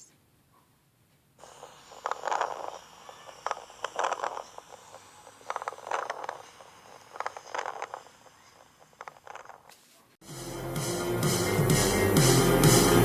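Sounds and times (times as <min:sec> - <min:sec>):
breathing through a stethoscope: 0:01.4 - 0:09.4
lung crackles: 0:01.4 - 0:10.0.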